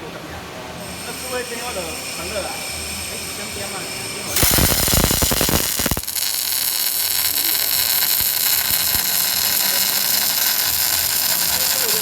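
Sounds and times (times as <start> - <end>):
arc welding hiss: 4.3 - 12.0
rapid crackling pulses: 4.3 - 12.0.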